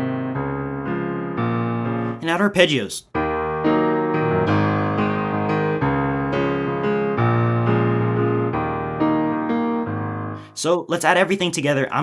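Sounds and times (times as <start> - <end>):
piano arpeggios: 0.0 - 10.5.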